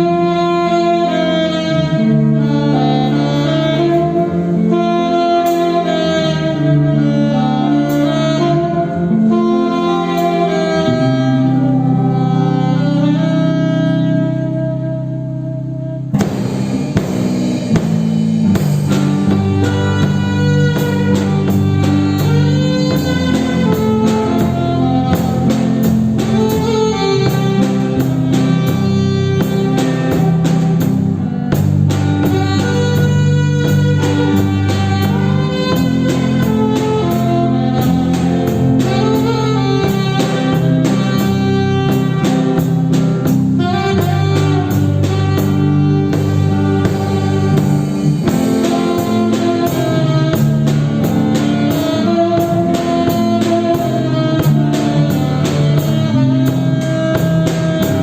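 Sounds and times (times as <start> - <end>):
drum kit beat: 0.0 - 12.8, 16.0 - 58.0
blues band playing: 0.0 - 58.0
guitar: 0.0 - 58.0.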